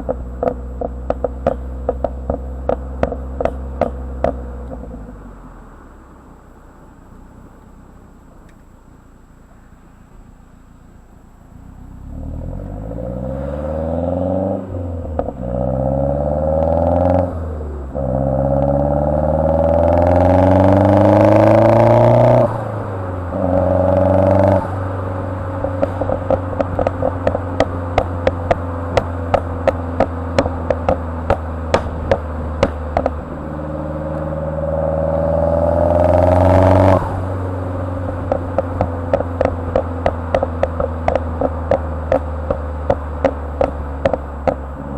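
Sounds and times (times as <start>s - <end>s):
exhaust pops and crackles: 0.0s - 5.0s, 19.5s - 34.4s, 35.9s - 44.9s
car engine revving: 0.0s - 44.9s.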